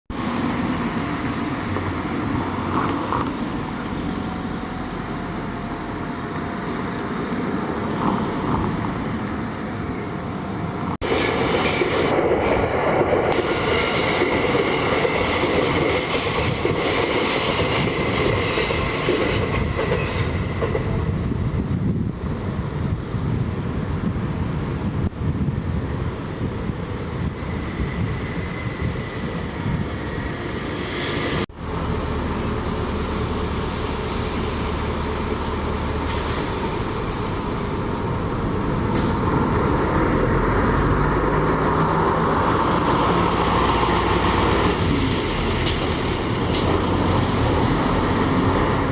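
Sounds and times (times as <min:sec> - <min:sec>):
train rumbling: 0:00.1 - 0:48.9
heavy vehicle engine running: 0:31.4 - 0:48.9.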